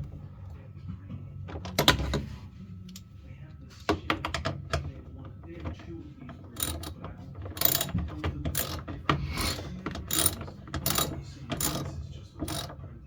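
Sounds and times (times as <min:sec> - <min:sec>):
socket ratchet wrench clicking: 0:06.6 - 0:06.9, 0:07.6 - 0:07.9, 0:10.1 - 0:11.9.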